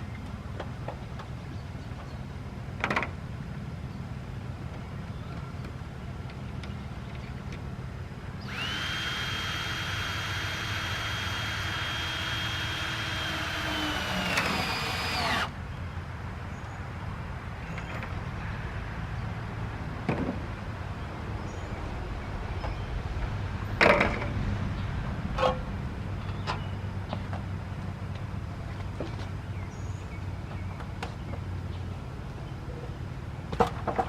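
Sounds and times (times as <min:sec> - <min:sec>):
power drill whine: 0:08.4 - 0:15.5.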